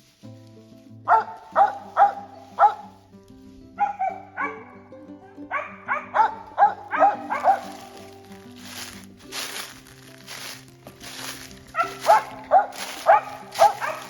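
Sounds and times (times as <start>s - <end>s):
background music: 0.0s - 14.0s
dog barking: 1.1s - 3.0s, 3.8s - 4.8s, 5.5s - 8.1s, 11.7s - 14.0s.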